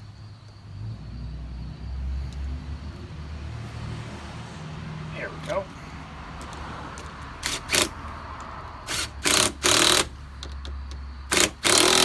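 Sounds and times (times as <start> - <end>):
short rasping bursts: 7.4 - 8.0, 8.8 - 10.1, 11.3 - 12.0.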